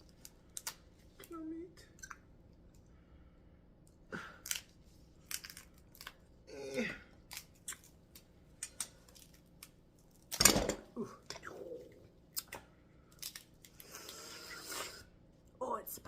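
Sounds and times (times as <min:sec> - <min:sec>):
shells cracking: 0:04.4 - 0:06.2.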